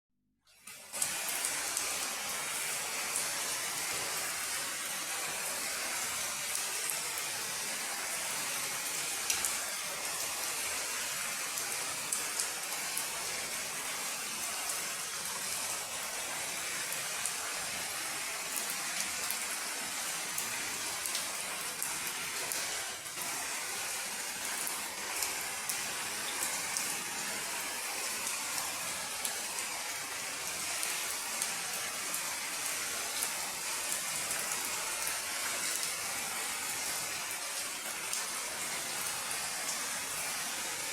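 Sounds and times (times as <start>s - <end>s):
steady rain hiss: 0.8s - 40.9s.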